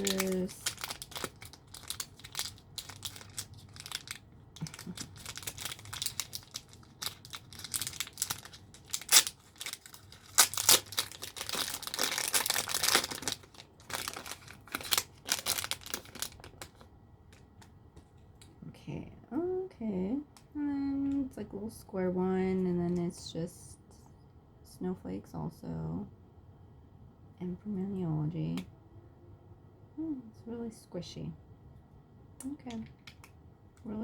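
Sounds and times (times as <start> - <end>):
packaging crinkling and tearing: 0.0 - 17.7.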